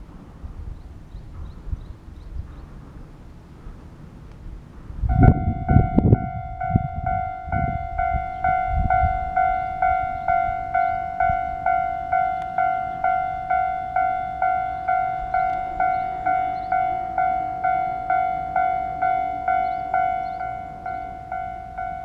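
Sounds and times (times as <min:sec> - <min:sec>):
level crossing alarm clanging: 0:05.1 - 0:22.0.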